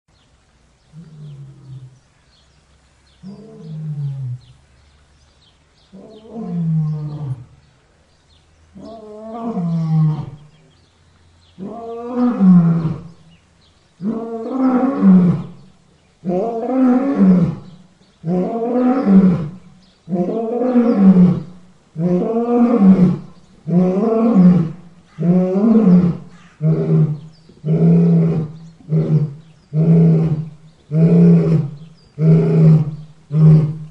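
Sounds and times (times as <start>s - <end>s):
lion roaring: 8.8s - 10.5s, 16.2s - 33.9s.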